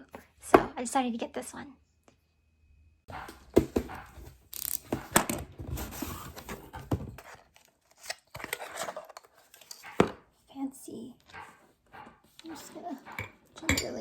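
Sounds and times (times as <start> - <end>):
handling knocks and clicks: 3.1 - 10.3.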